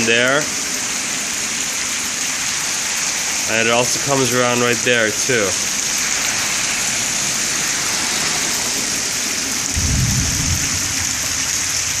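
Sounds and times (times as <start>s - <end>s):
rain on pavement: 0.0s - 12.0s
running water: 0.0s - 12.0s
low rumble: 9.7s - 12.0s.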